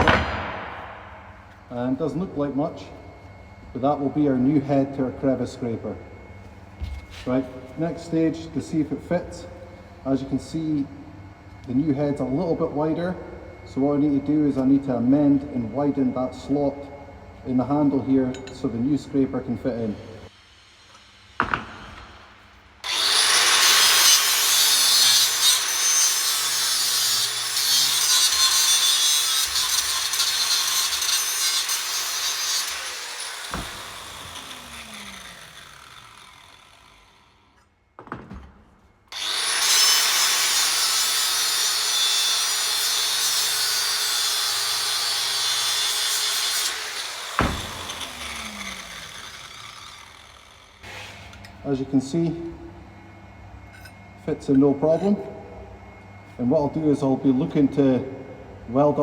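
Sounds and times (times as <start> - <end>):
power grinder cutting steel: 22.8 - 37.6, 39.1 - 51.1
motor winding down whine: 33.4 - 37.3, 47.4 - 50.8.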